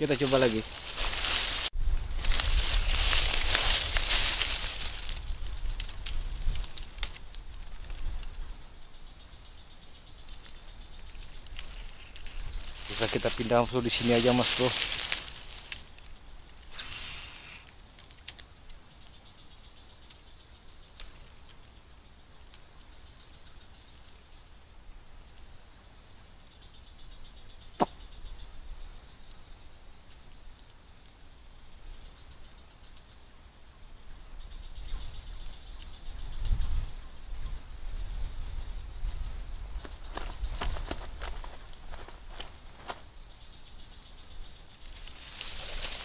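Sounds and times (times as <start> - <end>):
insects chirping and droning: 0.0 - 46.0.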